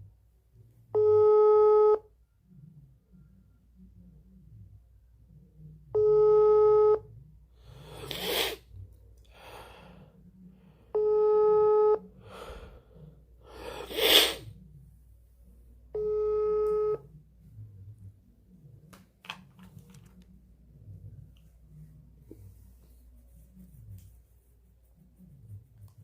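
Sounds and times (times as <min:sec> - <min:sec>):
telephone ringback tone: 0:01.0 - 0:02.0, 0:06.0 - 0:07.0, 0:11.0 - 0:12.0, 0:16.0 - 0:17.0
person breathing out heavily: 0:09.3 - 0:10.8, 0:12.2 - 0:14.5.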